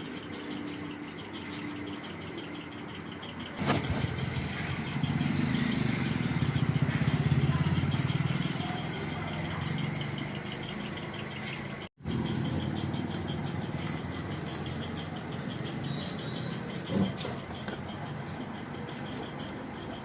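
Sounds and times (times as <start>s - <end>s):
engine pulsing rumble: 0.4s - 20.0s.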